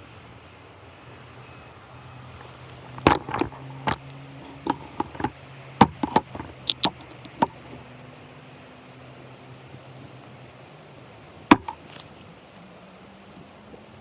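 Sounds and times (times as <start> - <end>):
sharp knocks and taps: 3.0 - 7.6, 11.5 - 11.8.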